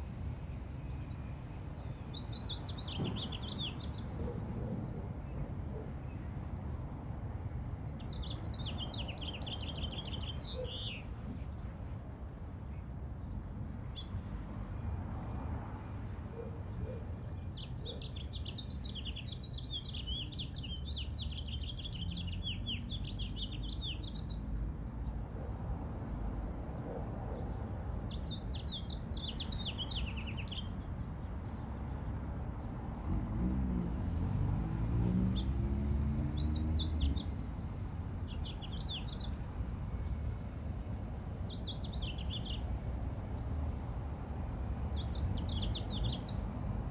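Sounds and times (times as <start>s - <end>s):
songbird singing: 0.0s - 6.3s, 7.9s - 12.0s, 16.3s - 31.8s, 35.0s - 40.2s, 41.3s - 43.5s, 44.7s - 46.8s.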